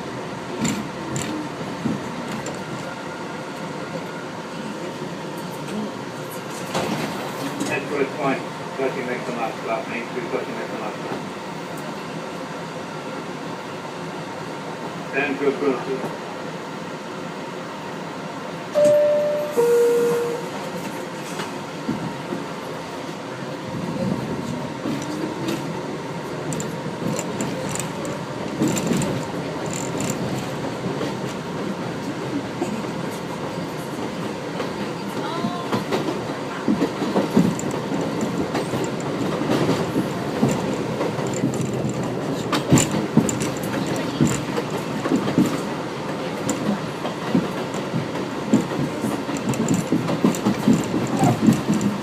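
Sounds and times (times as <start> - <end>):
two-note door chime: 18.8 - 20.5
wheels clattering over rails: 26.3 - 31.7, 34.0 - 52.0.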